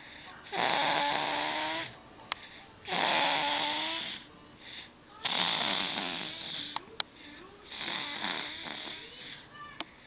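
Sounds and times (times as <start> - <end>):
buzzing snores: 0.5 - 1.9, 2.9 - 4.3, 5.2 - 6.8, 7.6 - 9.4.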